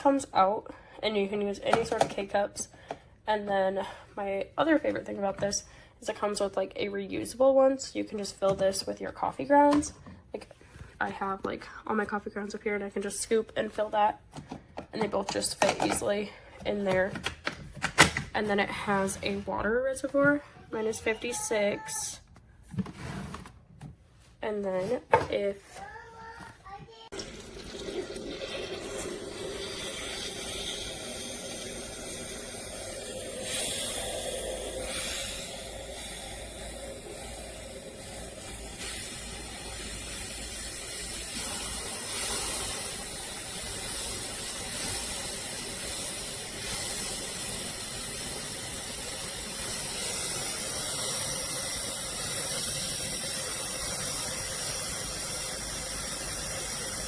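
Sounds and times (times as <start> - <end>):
coffee maker hissing: 27.0 - 57.0
steam and water noise: 27.1 - 57.0.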